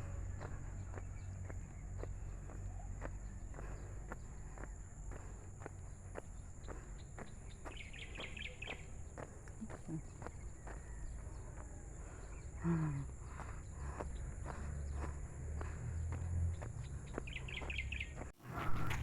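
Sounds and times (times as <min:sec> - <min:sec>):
high bird chirps: 0:07.2 - 0:09.0.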